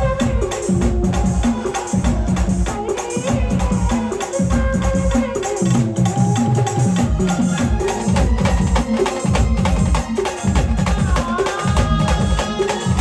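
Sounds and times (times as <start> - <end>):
loud rhythmic drum beats: 0.0 - 13.0
brass band playing: 7.1 - 11.1.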